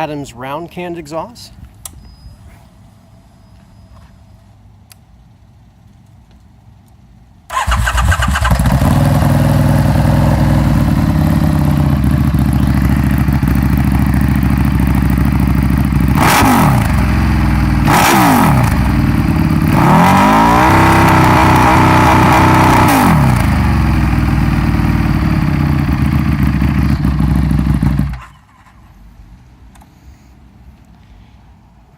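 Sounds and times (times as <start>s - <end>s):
motorcycle engine idling and revving: 7.5s - 29.0s.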